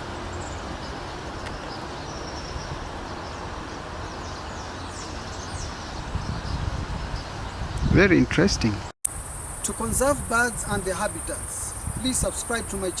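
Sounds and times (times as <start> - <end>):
small birds calling: 9.1 - 13.0.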